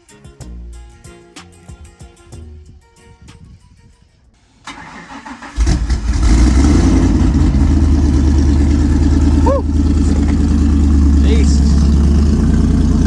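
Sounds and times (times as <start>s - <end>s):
engine idling loudly: 6.1s - 13.0s.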